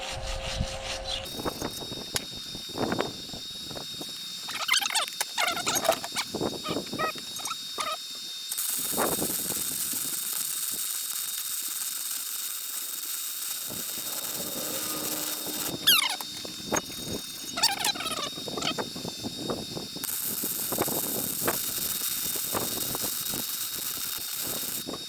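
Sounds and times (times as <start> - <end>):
welding arc hissing: 1.2 - 25.0
squeaks: 4.5 - 8.0, 13.6 - 18.9
short falling squeal: 13.6 - 18.8.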